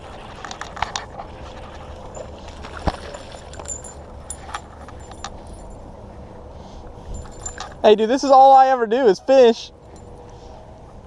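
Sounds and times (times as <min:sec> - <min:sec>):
steady low rumble: 0:00.0 - 0:11.0
light metallic clinks: 0:02.0 - 0:06.0, 0:07.0 - 0:08.6.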